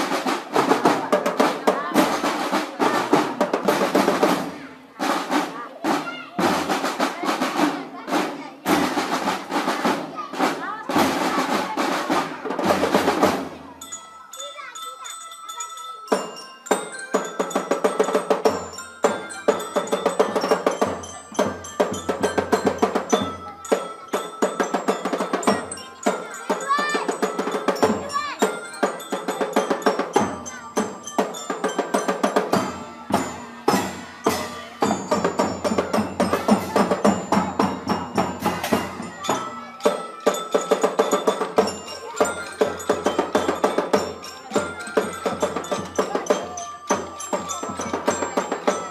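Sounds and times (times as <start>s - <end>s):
drums beating: 0.0s - 48.9s
glockenspiel melody: 13.5s - 48.9s.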